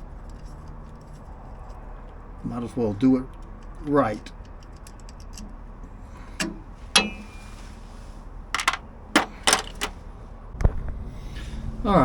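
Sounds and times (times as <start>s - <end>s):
low background hum: 0.0s - 12.0s
tools knocking and clinking: 6.4s - 7.4s, 8.6s - 10.0s.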